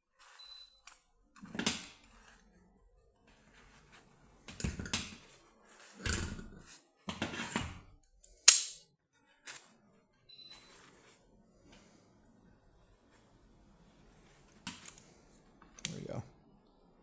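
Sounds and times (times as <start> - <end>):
rustling and scraping: 3.2 - 7.9, 8.5 - 15.8
sharp metallic snap: 8.4 - 8.8.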